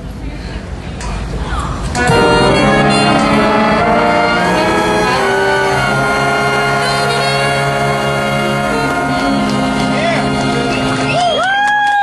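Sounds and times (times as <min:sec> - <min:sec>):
jazz big band long held chord: 0:02.0 - 0:11.4
alto saxophone: 0:02.0 - 0:11.6.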